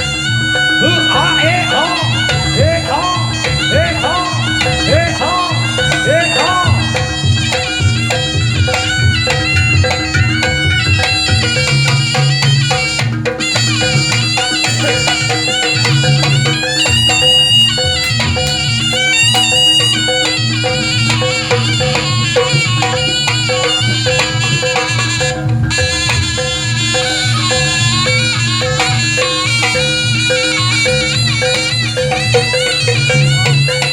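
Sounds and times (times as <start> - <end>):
steady drone: 0.0 - 25.8
reedy wind instrument melody: 0.0 - 33.9
rhythmic drumming: 0.0 - 33.9.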